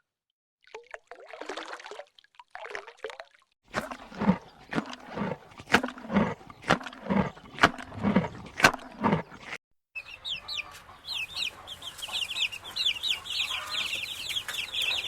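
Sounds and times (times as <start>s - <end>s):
water trickling and splashing: 0.6s - 9.6s
animal calling: 3.7s - 15.0s.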